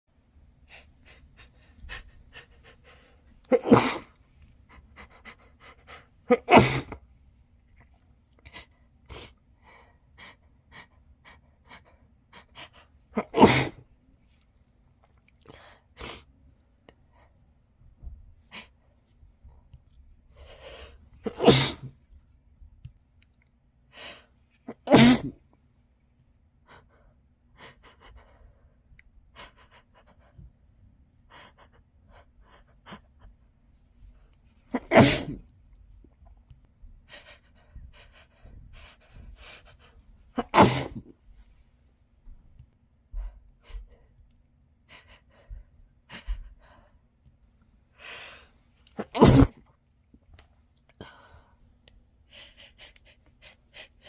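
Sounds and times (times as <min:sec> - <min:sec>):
muffled sneezes: 0:03.5 - 0:04.2, 0:06.2 - 0:07.0, 0:13.1 - 0:13.8, 0:21.2 - 0:22.0, 0:24.6 - 0:25.4, 0:34.7 - 0:35.5, 0:40.3 - 0:41.2, 0:48.9 - 0:49.7.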